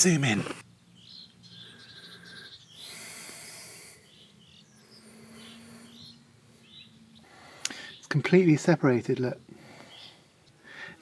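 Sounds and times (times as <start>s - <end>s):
bird chirps: 0.8s - 8.4s, 9.4s - 10.6s.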